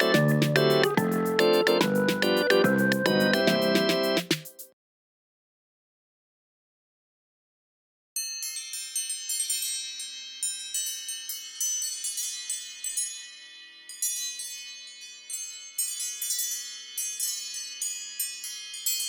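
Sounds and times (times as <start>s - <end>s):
wind-chime-like alarm tone: 8.2s - 19.0s.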